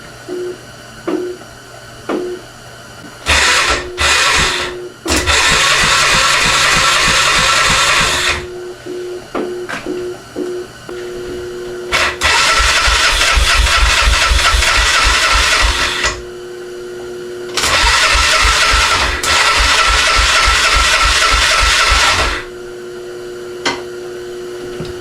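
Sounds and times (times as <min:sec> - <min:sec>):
engine cranking on starter: 0:03.3 - 0:08.5, 0:11.9 - 0:16.2, 0:17.6 - 0:22.5.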